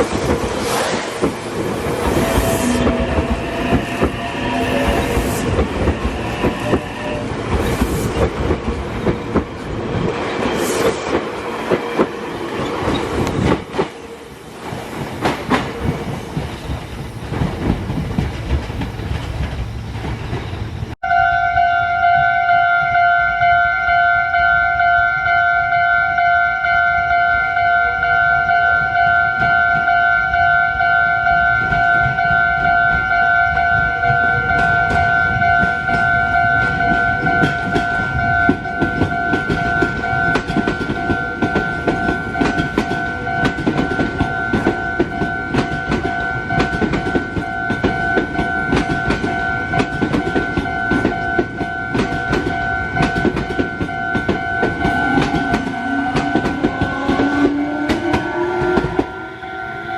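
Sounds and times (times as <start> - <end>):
train wheels clattering over rails: 0.0 - 21.0, 34.6 - 59.2
level crossing warning bell: 21.0 - 59.9.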